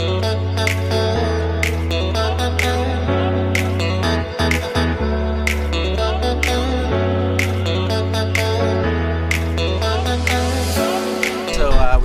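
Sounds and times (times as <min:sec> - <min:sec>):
regular beat: 0:11.6 - 0:12.0
sustained bass: 0:11.6 - 0:12.0.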